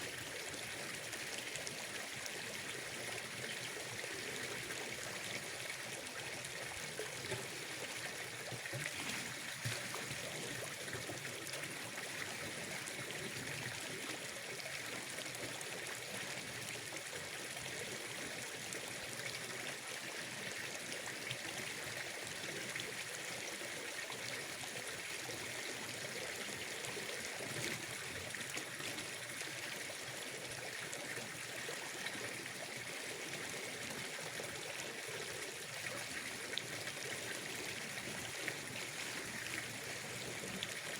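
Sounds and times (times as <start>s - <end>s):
water trickling: 0.2s - 16.0s.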